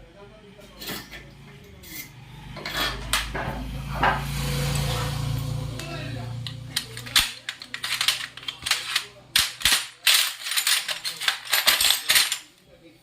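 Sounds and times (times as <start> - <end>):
metallic clicks and clanks: 5.8 - 12.5
metal rattling: 6.4 - 12.5.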